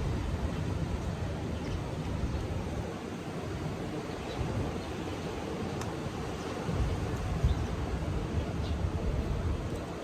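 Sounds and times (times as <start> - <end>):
wind buffeting microphone: 0.0 - 10.0.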